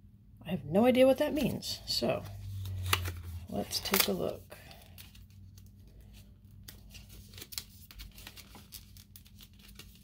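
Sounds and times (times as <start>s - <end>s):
paper packaging crinkling: 2.3s - 10.0s.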